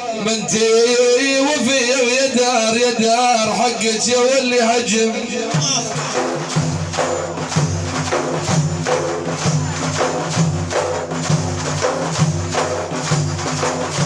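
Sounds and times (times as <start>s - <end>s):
hand percussion beat: 5.5s - 14.0s.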